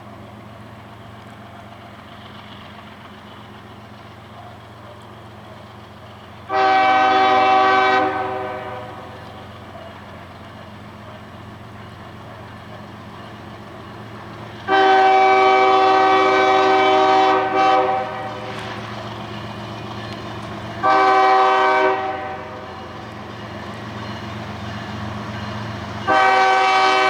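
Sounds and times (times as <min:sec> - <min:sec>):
train rumbling: 0:00.0 - 0:27.0
locomotive air horn blast: 0:06.5 - 0:09.2, 0:14.7 - 0:18.7, 0:20.8 - 0:22.7, 0:26.1 - 0:27.0.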